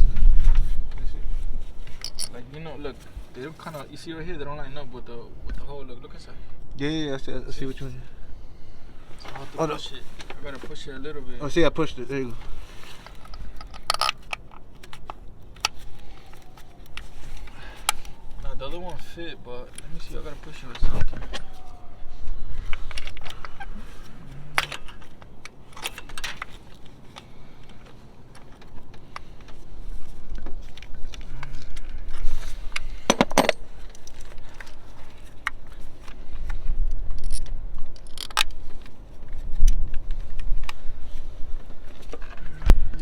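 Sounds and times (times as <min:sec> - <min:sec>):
low wind rumble on microphone: 0:00.0 - 0:02.2, 0:19.9 - 0:25.7, 0:27.4 - 0:43.0
metallic clicks of hand tools: 0:37.1 - 0:38.5.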